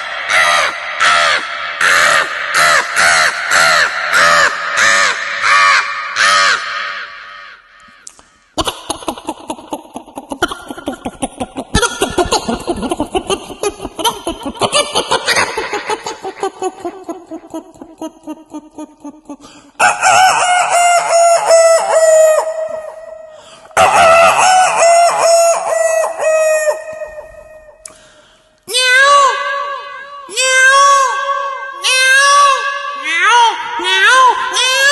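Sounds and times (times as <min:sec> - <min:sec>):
man imitating rooster crows: 0:23.8 - 0:25.6
man imitating chicken clucks: 0:23.8 - 0:27.3.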